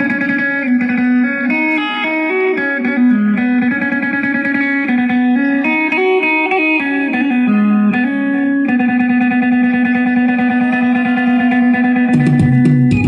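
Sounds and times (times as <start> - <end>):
dance music with plucked strings: 8.7 - 13.0.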